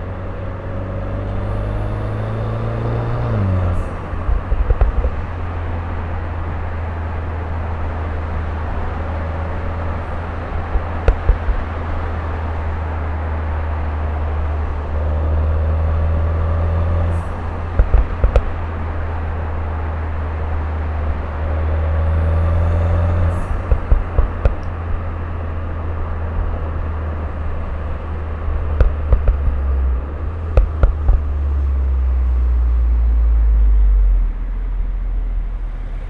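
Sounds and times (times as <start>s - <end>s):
car engine droning: 0.0s - 36.0s
sharp exhaust pops: 3.7s - 5.8s, 10.0s - 11.9s, 17.1s - 18.9s, 22.2s - 25.1s, 28.4s - 32.5s.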